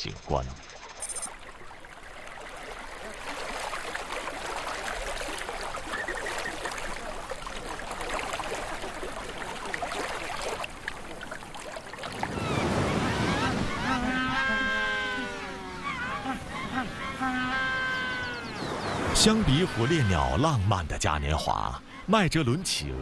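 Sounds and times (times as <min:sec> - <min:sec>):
water splashing and trickling: 0:00.0 - 0:23.0
faint flamingo calls: 0:12.4 - 0:20.4.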